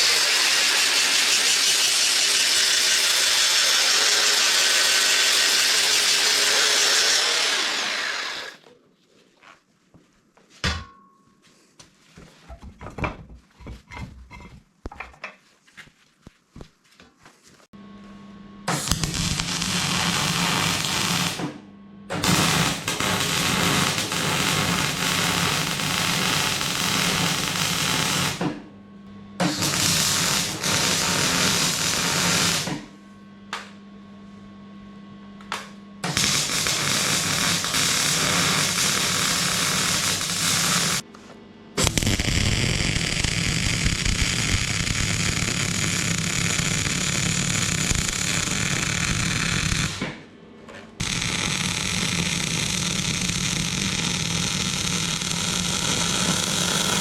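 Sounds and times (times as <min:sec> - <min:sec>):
welding arc crackling and hissing: 0:00.0 - 0:08.6, 0:18.7 - 0:21.6, 0:22.2 - 0:28.4, 0:29.4 - 0:32.8, 0:36.0 - 0:41.0, 0:41.8 - 0:50.1, 0:51.0 - 0:57.0
welder humming: 0:00.0 - 0:08.8, 0:17.8 - 0:33.8, 0:35.4 - 0:50.3, 0:51.0 - 0:57.0.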